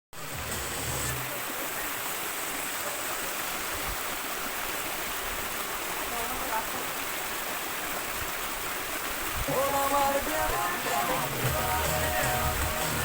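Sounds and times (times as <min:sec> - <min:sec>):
waterfall rushing: 0:00.2 - 0:13.0.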